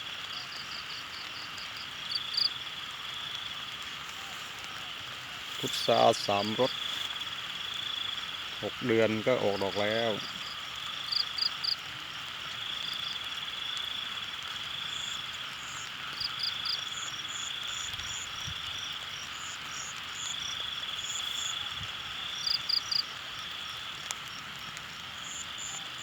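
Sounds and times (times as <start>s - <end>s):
frogs and insects trilling: 0.0s - 26.0s.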